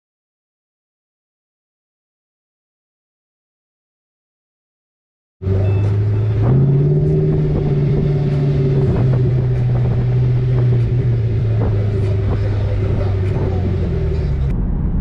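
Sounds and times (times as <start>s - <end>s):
car engine and road noise: 5.4s - 15.0s.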